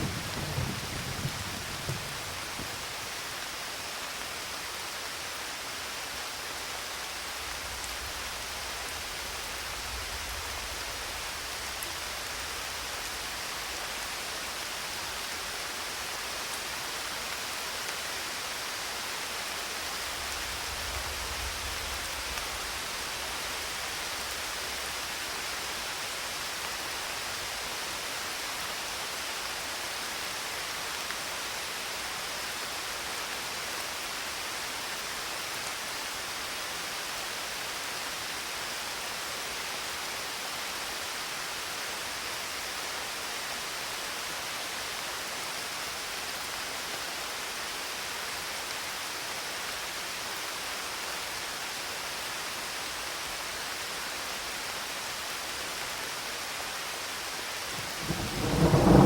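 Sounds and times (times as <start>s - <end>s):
thunder rumbling: 0.0s - 2.8s, 57.8s - 59.0s
rain falling: 0.0s - 59.0s.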